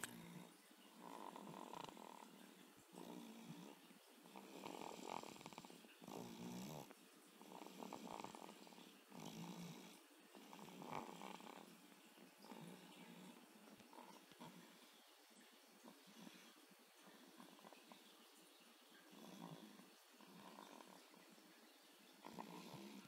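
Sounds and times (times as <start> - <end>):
baby snoring: 0.4 - 2.3, 2.9 - 11.7, 22.2 - 23.0.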